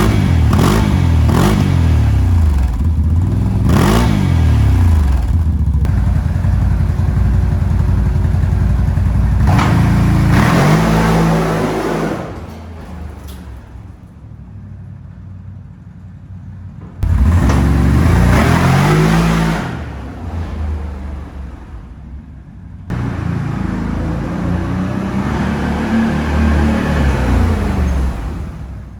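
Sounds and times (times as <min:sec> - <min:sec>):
engine revving and idling: 0:00.0 - 0:28.9.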